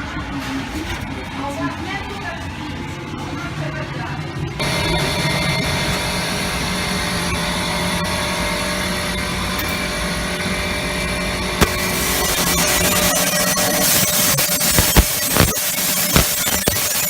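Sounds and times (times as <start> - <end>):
steady machine noise: 0.0 - 17.0.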